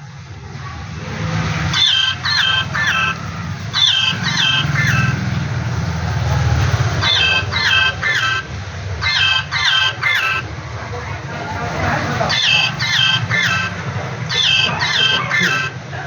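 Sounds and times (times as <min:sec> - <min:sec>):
hen clucking: 0:01.7 - 0:10.5, 0:11.7 - 0:16.0.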